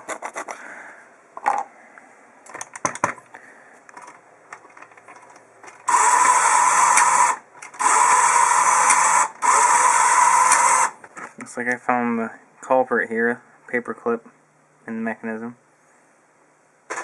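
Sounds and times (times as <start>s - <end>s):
electric hole punch motor whining: 5.9s - 11.0s.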